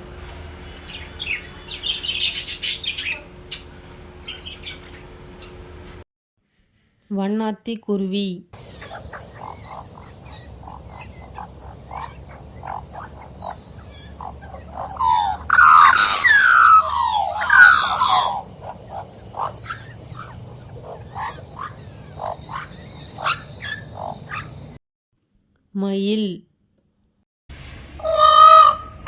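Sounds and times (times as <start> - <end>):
magpie calling: 0.1 - 5.8, 8.6 - 24.7.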